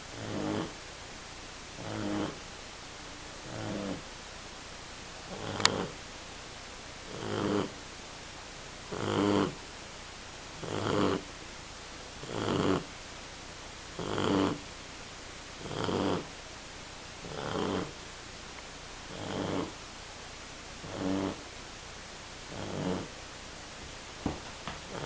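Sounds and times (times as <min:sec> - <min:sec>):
puppy snoring loudly: 0:00.0 - 0:00.8, 0:01.8 - 0:02.5, 0:03.4 - 0:04.1, 0:05.3 - 0:06.0, 0:07.1 - 0:07.8, 0:08.9 - 0:09.6, 0:10.6 - 0:11.3, 0:12.2 - 0:12.9, 0:13.9 - 0:14.7, 0:15.6 - 0:16.4, 0:17.2 - 0:18.0, 0:19.1 - 0:19.8, 0:20.8 - 0:21.5, 0:22.5 - 0:23.2.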